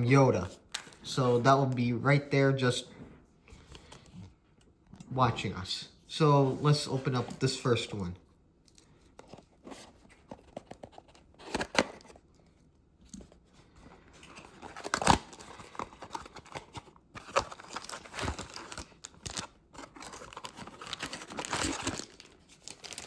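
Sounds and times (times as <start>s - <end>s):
packaging tearing and crinkling: 14.2s - 23.0s.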